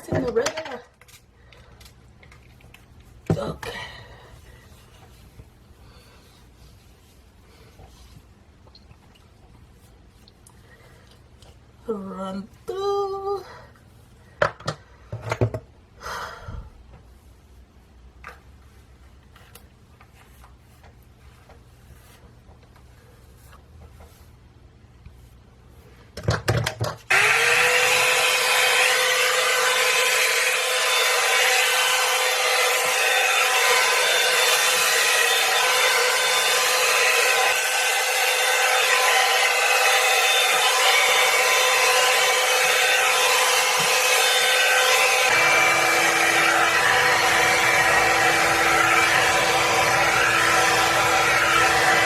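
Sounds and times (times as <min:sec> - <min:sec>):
hot-air brush motor whining: 0:27.1 - 0:52.0.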